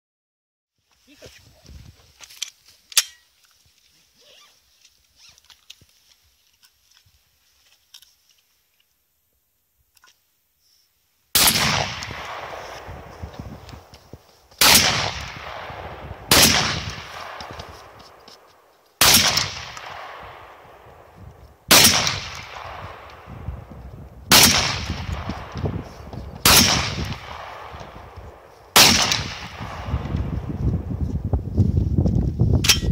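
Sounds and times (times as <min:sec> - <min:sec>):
gunshots with long echo: 0:11.3 - 0:14.0, 0:14.6 - 0:30.6.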